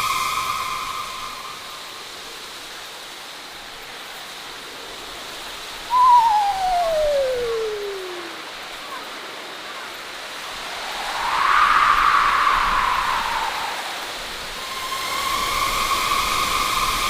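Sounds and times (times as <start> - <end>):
wind-like hiss: 0.0 - 17.0
eerie cry: 5.9 - 8.5.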